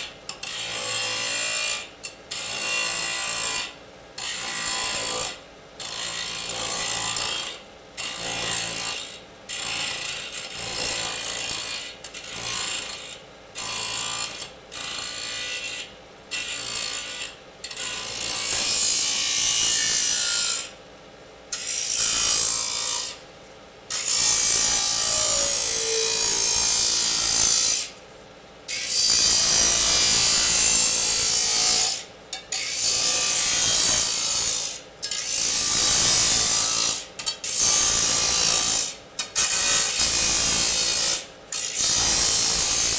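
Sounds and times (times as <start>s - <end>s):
disk saw cutting metal: 28.7s - 42.9s.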